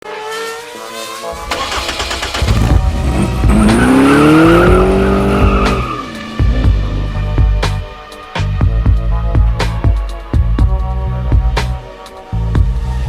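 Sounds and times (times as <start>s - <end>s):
engine revving: 0.0s - 8.1s
music with heavy low beat: 2.4s - 13.0s.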